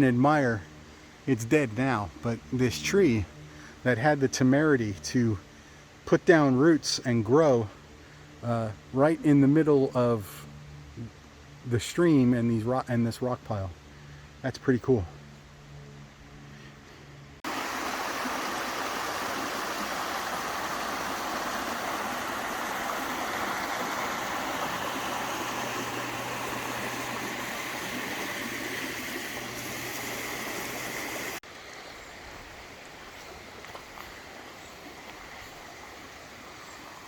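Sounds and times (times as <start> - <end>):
stream water over rocks: 17.4 - 37.0.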